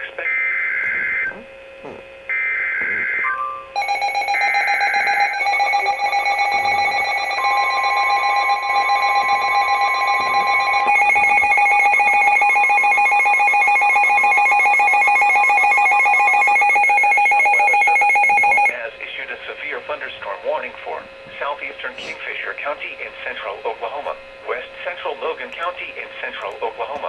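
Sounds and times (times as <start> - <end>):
electronic attention tone: 2.3 - 18.7
warbling digital data tones: 2.3 - 18.7.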